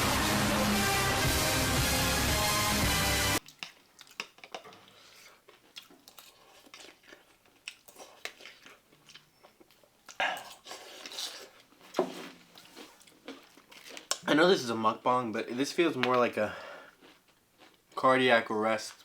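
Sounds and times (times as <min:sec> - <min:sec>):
chewing and crunching snack food: 0:03.4 - 0:14.6, 0:15.4 - 0:19.0.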